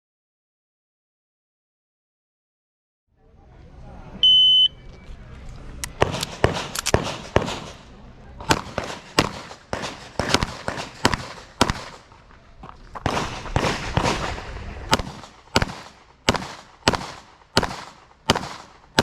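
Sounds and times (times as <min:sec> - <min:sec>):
handgun shots with echo: 0:05.8 - 0:12.1, 0:13.0 - 0:19.0.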